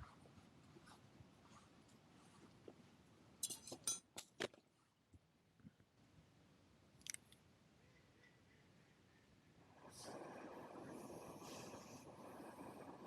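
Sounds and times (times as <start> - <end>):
light metallic clinks: 3.4 - 4.1.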